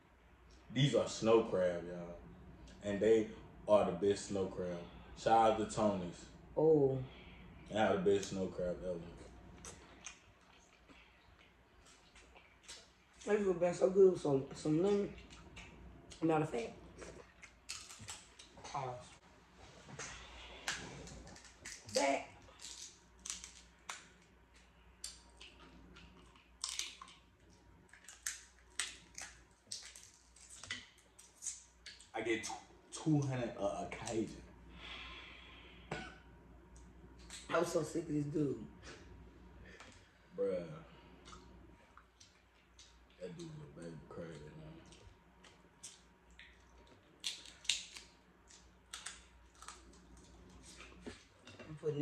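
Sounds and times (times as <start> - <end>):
crab shells cracking: 17.4 - 18.5, 20.7 - 24.3, 25.0 - 32.1, 45.5 - 50.3.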